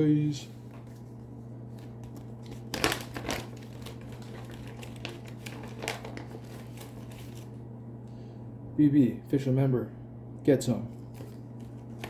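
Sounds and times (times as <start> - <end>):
steady low hum: 0.0 - 12.0
packaging crinkling and clicking: 1.8 - 7.5.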